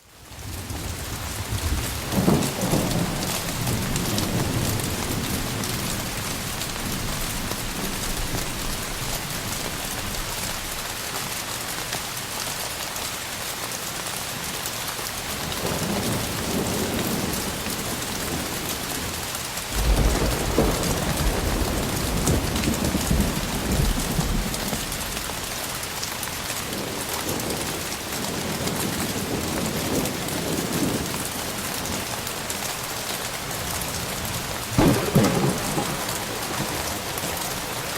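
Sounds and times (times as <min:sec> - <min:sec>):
heavy rain falling: 0:00.0 - 0:37.9
rolling thunder: 0:00.4 - 0:10.4, 0:15.4 - 0:25.7, 0:33.5 - 0:37.9.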